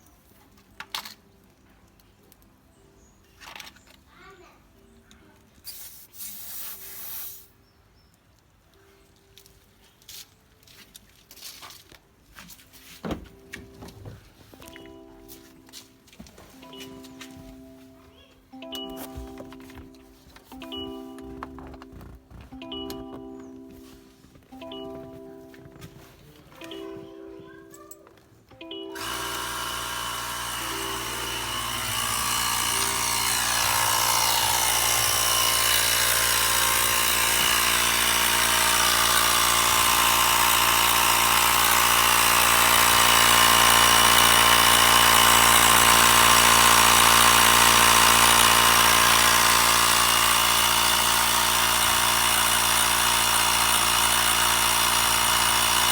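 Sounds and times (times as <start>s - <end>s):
air compressor motor buzz: 29.0s - 55.9s.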